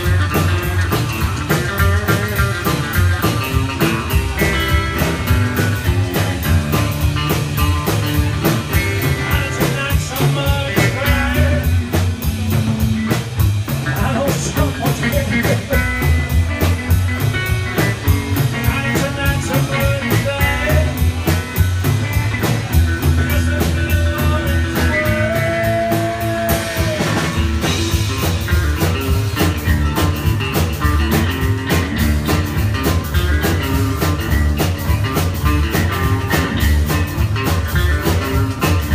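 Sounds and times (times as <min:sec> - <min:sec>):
electric guitar: 0:00.0 - 0:38.9
rock band playing live: 0:00.0 - 0:38.9.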